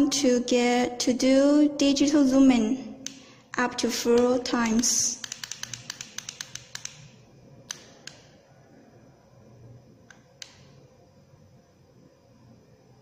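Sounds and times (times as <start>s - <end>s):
push buttons clicking: 4.0s - 7.1s.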